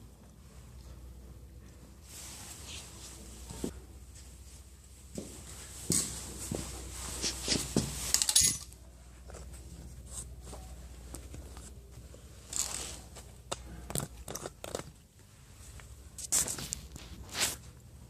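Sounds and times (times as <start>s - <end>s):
metal parts and tools clinking: 8.0s - 8.8s, 12.4s - 15.0s.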